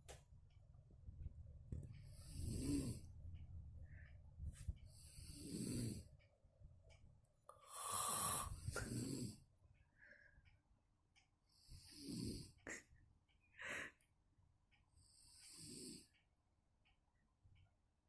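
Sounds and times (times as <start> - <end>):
woman snoring loudly: 2.2 - 3.0, 5.2 - 6.0, 7.6 - 9.4, 11.7 - 12.6.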